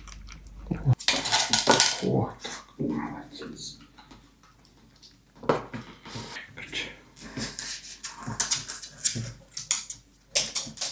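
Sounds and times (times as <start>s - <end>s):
puppy scuffling and clicking: 7.6s - 10.9s.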